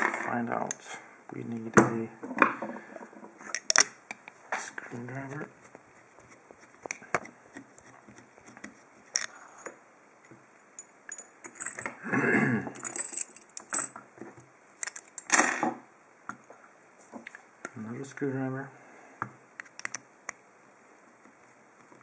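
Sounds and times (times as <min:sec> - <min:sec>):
metal clicks and clinks: 0:10.8 - 0:11.9, 0:12.8 - 0:14.0.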